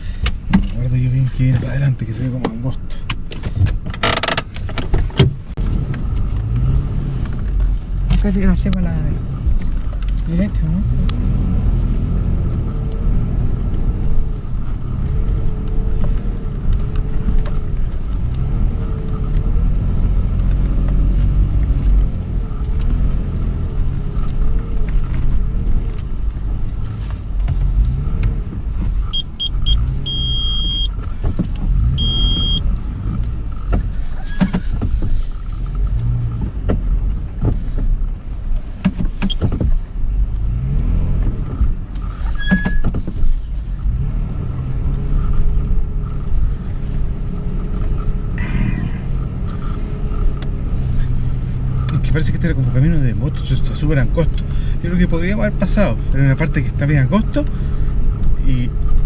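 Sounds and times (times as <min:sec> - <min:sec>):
car engine rumble: 0:00.0 - 0:59.0
short electronic beeps: 0:29.1 - 0:30.9, 0:32.0 - 0:32.6.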